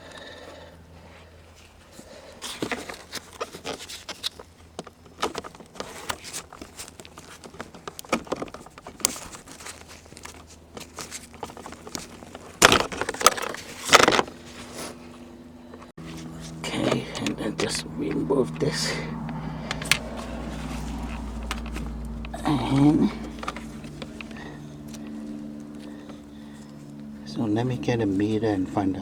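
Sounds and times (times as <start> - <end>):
hands handling plastic trim: 2.4 - 14.9.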